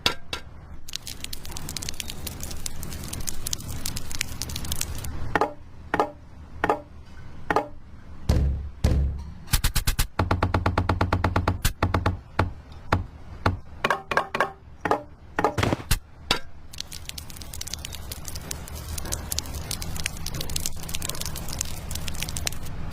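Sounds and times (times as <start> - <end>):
crackling hiss: 0.8 - 5.2, 16.7 - 22.9.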